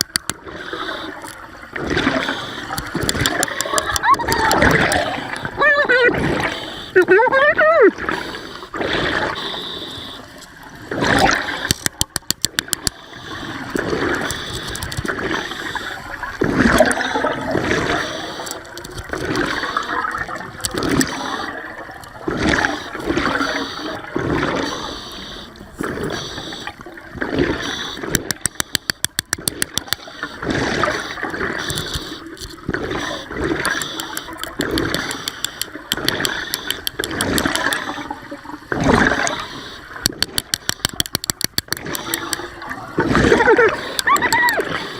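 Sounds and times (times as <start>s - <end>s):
water sloshing and gurgling: 0.0s - 44.9s
rapid clicking: 2.7s - 5.0s, 11.7s - 13.0s, 27.8s - 30.2s, 31.6s - 37.9s, 40.0s - 42.5s.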